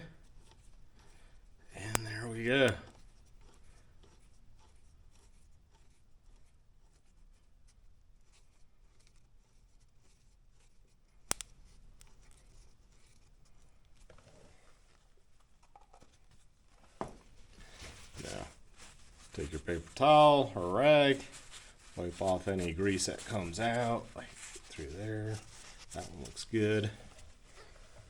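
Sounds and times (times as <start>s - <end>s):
small clicks: 11.3s - 12.4s.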